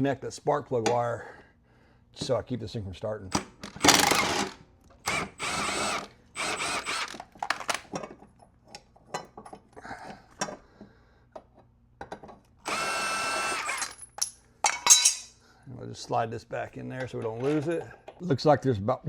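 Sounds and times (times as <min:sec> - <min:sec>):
cordless power tool bursts: 0:03.6 - 0:07.7, 0:12.6 - 0:14.0.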